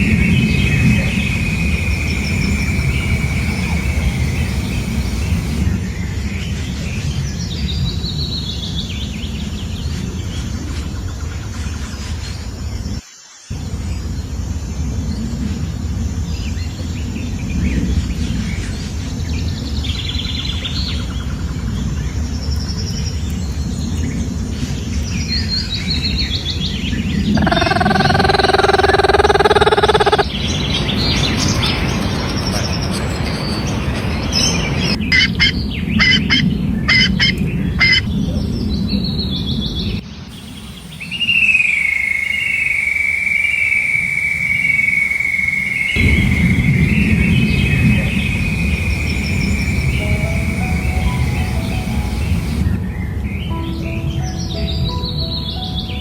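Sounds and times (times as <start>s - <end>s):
high rising whistle: 0.0s - 5.7s, 27.4s - 30.3s, 40.3s - 52.7s
birds chirping and calling: 0.4s - 5.6s, 27.4s - 30.3s, 40.3s - 52.6s.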